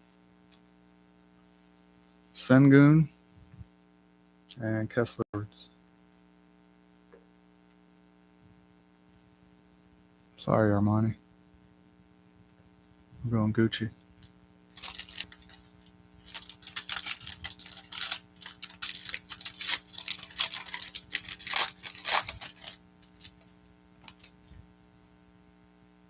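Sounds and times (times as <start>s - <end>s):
foil wrapper crinkling: 14.7s - 24.5s.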